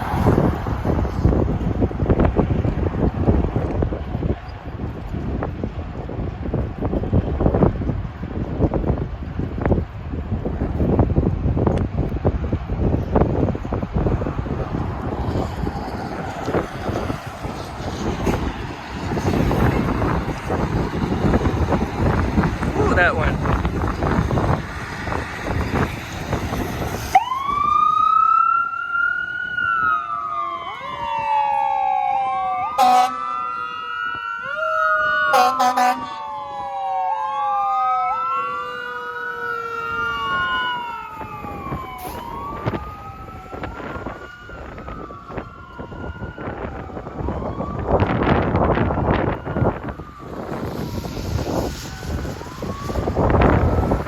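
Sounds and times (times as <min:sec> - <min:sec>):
broad rush of noise: 0:00.0 - 0:28.1, 0:36.0 - 0:54.0
fire truck siren wailing: 0:00.0 - 0:54.0
air horn blasts: 0:32.8 - 0:33.4, 0:35.3 - 0:36.2.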